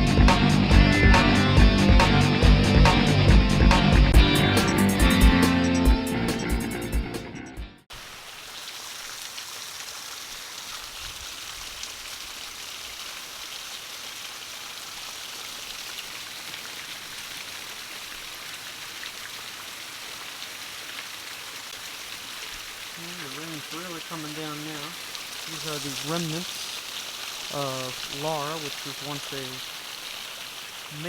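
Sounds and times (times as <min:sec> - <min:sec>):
guitar music: 0:00.0 - 0:07.8
heavy rain: 0:07.9 - 0:31.0.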